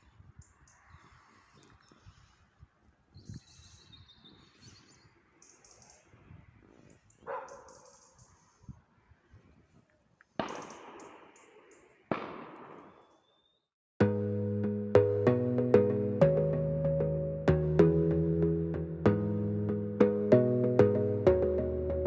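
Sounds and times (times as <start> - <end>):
sharp bangs: 10.4 - 13.2.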